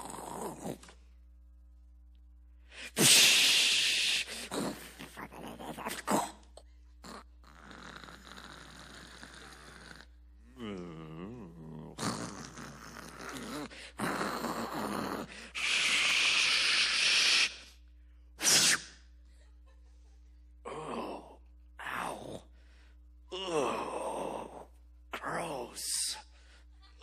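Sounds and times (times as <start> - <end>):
hissing mouth noises: 2.8 - 6.4, 12.0 - 17.8, 18.4 - 19.0
man groaning voice effect: 10.5 - 16.1, 20.6 - 22.5, 23.3 - 26.2.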